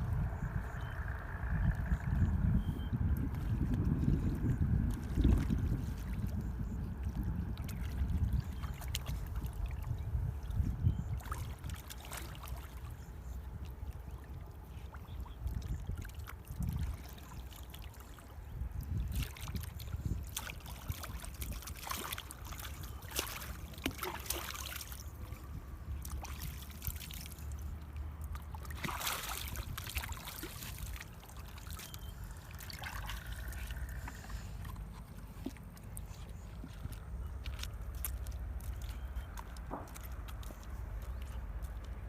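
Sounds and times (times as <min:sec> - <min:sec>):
low rumble: 0:00.0 - 0:11.7
shallow water splashing: 0:03.2 - 0:42.0.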